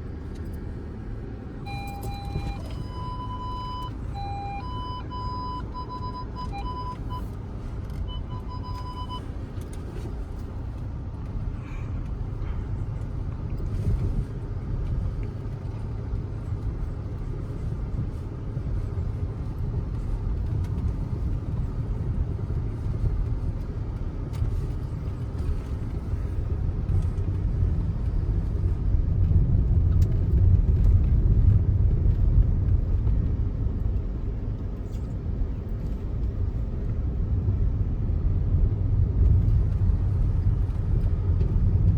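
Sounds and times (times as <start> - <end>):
car engine and tyres rumbling: 0.0 - 41.9
short steady tone: 1.7 - 7.2.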